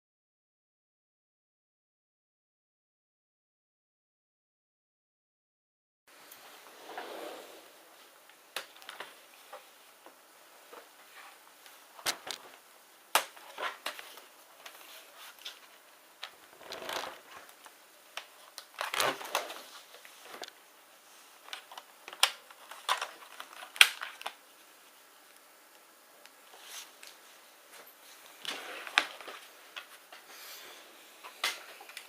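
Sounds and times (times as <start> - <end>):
sharp plastic cracks: 13.1 - 14.0, 21.5 - 24.4.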